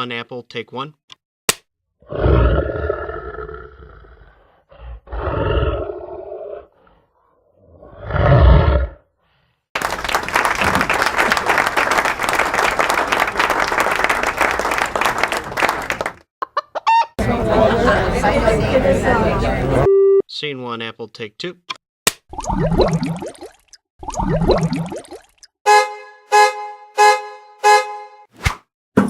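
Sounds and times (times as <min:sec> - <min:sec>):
deep animal roars: 0:02.0 - 0:09.0.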